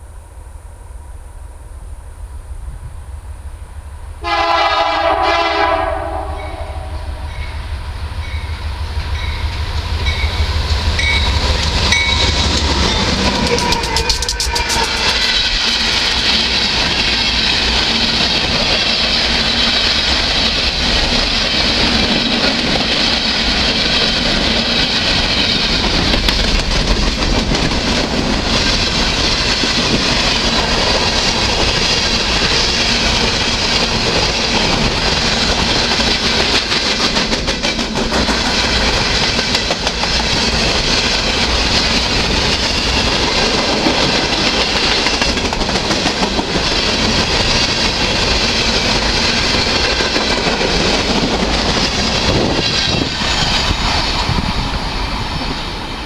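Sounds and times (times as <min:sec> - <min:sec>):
train rumble and hiss: 0:00.0 - 0:56.0
train wheels clicking over rail joints: 0:01.4 - 0:56.0.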